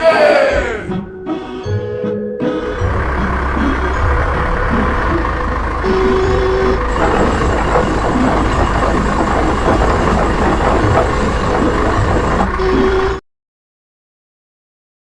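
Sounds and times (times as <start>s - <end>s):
construction machinery engine rumble: 0.6s - 13.2s.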